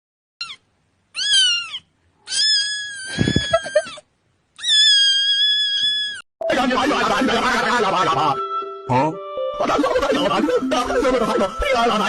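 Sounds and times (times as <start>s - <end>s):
cat meowing: 0.4s - 4.0s, 4.6s - 6.2s.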